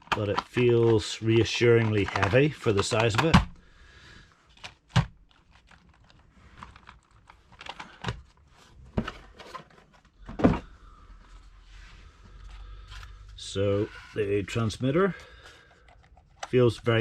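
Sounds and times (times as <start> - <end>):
plastic toy car handled: 0.0 - 3.6, 4.5 - 10.7, 15.4 - 17.0.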